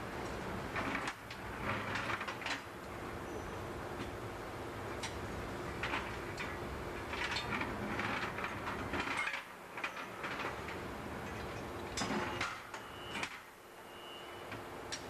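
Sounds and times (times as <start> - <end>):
low machinery hum: 0.0 - 15.0
metallic clanks of tools: 11.3 - 13.4.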